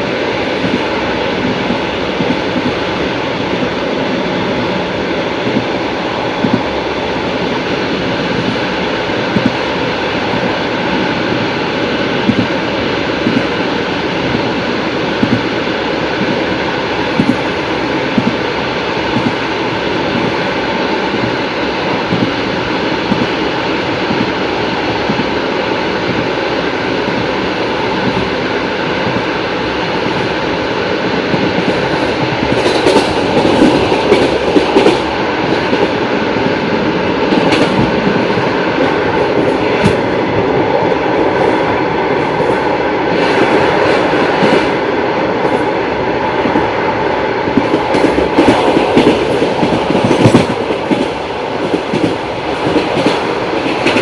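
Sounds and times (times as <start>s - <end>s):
train wheels clattering over rail joints: 47.6s - 54.0s.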